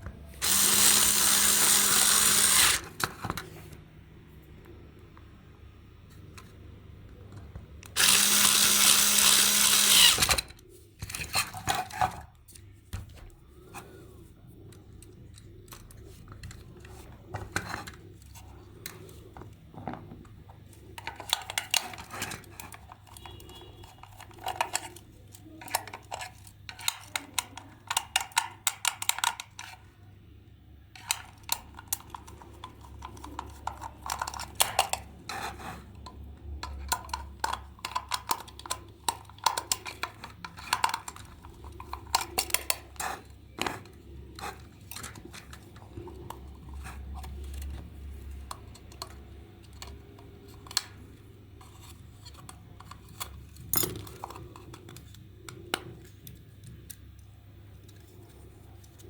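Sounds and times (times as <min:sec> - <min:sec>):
small power tool running: 0:00.4 - 0:02.9, 0:08.0 - 0:10.4
small clicks and scrapes: 0:07.3 - 0:19.6, 0:20.2 - 0:29.9, 0:31.0 - 0:59.0.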